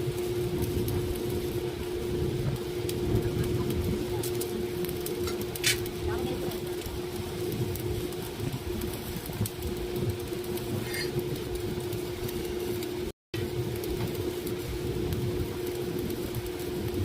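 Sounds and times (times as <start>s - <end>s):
steady machine hum: 0.0s - 17.0s.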